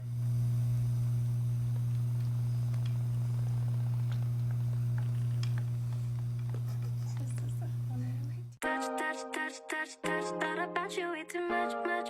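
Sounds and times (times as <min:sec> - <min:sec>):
steady low hum: 0:00.0 - 0:08.6.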